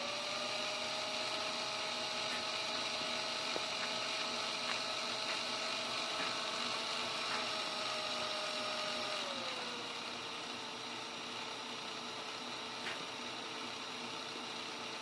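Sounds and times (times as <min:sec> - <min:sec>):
electric drill whine: 0:00.0 - 0:15.0.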